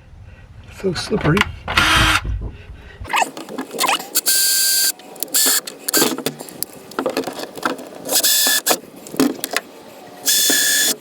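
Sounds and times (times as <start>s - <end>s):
power drill whining: 8.1s - 8.8s, 10.3s - 11.0s.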